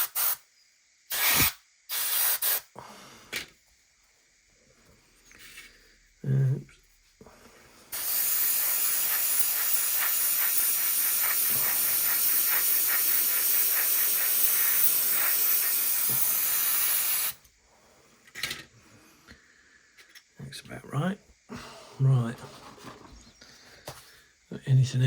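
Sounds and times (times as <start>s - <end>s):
airbrush hissing: 0.0s - 0.4s, 1.1s - 2.8s, 7.9s - 17.5s.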